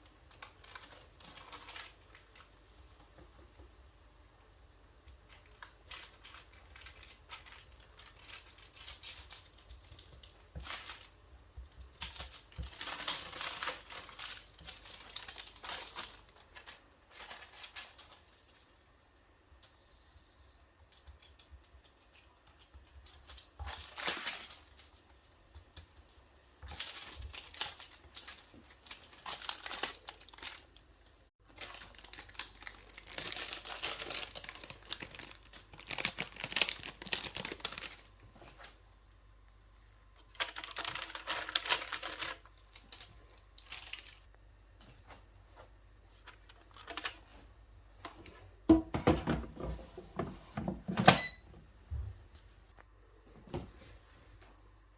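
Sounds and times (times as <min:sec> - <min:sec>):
packaging crinkling and rustling: 0:00.0 - 0:03.6, 0:04.6 - 0:18.9, 0:20.9 - 0:38.8, 0:40.0 - 0:48.4.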